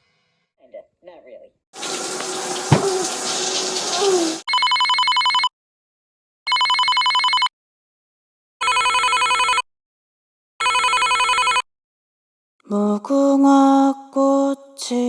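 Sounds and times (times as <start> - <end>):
rushing hiss: 1.8 - 4.4
electronic telephone ringing: 4.5 - 5.5, 6.5 - 7.5, 8.6 - 9.6, 10.6 - 11.6.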